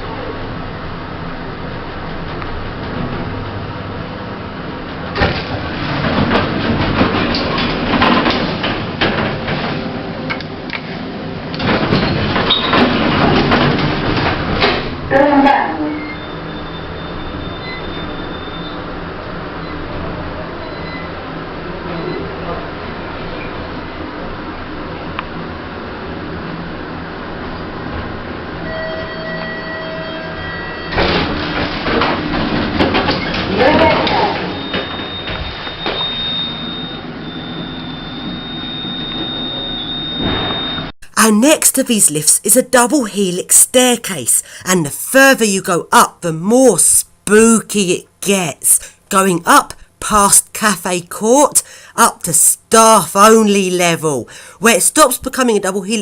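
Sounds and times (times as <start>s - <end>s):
lift doors sliding open and shut: 0.8s - 15.1s, 15.8s - 23.8s, 26.0s - 40.9s.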